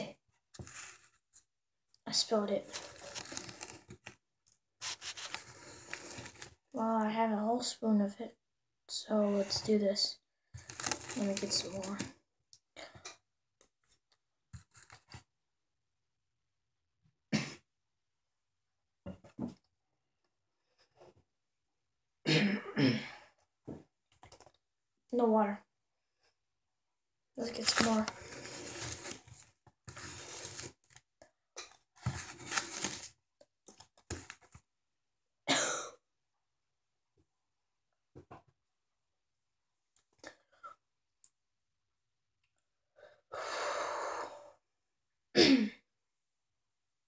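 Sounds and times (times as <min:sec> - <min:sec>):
person coughing: 0:22.3 - 0:23.2, 0:35.5 - 0:36.0, 0:45.4 - 0:45.8.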